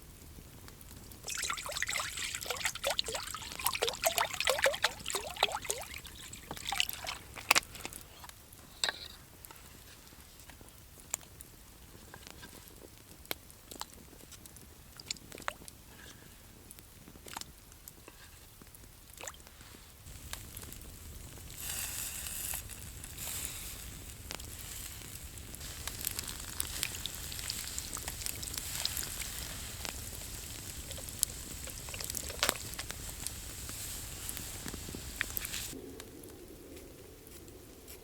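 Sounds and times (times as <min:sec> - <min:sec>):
liquid dripping: 0:01.2 - 0:07.6
liquid pouring gurgling: 0:01.2 - 0:07.6, 0:26.0 - 0:32.6.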